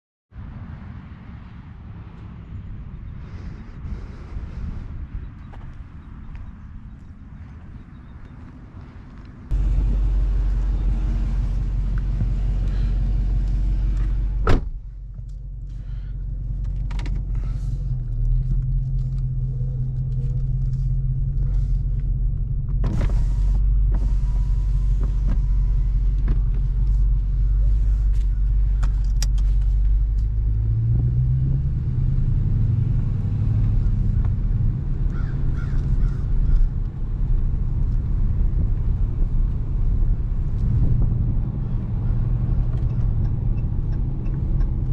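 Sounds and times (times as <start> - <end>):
car engine running: 9.1 - 44.9.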